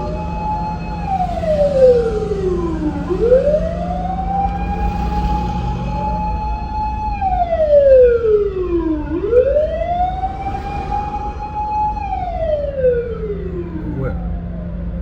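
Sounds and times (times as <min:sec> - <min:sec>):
fire engine siren wailing: 0:00.0 - 0:14.4
low rumble: 0:08.9 - 0:14.5.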